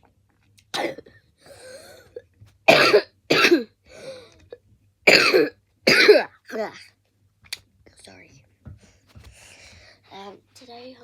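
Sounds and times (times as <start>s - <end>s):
person coughing: 0.8s - 3.7s, 5.1s - 6.4s.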